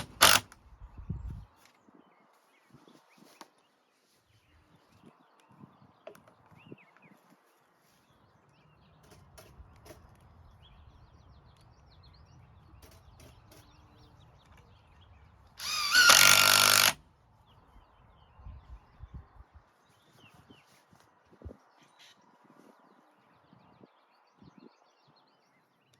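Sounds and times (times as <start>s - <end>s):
power drill drilling into wood: 0.0s - 0.5s, 15.6s - 17.0s.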